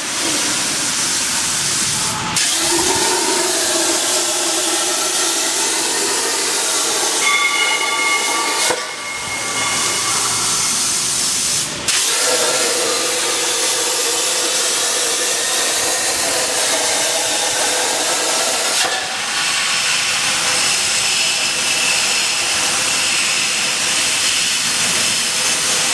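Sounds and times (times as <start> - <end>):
plasma torch hissing: 0.0 - 7.4, 8.2 - 25.9
faint machine whine: 2.0 - 11.9.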